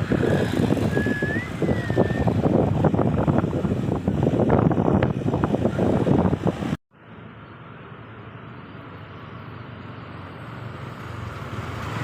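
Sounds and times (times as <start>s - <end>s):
wind buffeting microphone: 0.0s - 6.8s.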